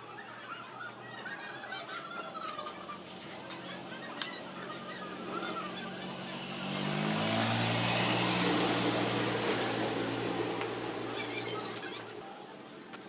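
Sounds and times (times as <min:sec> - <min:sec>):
vehicle engine passing by: 0:02.8 - 0:12.2.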